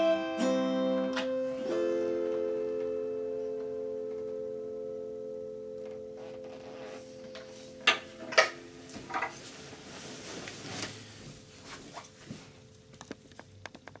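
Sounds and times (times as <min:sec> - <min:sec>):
guitar chord ringing: 0:00.0 - 0:13.0.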